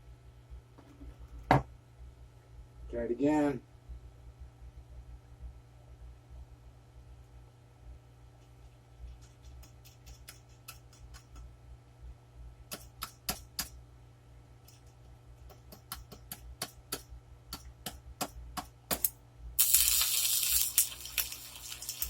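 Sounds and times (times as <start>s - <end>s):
arc crackling and snapping: 18.9s - 22.0s
arc welder humming: 19.0s - 22.0s.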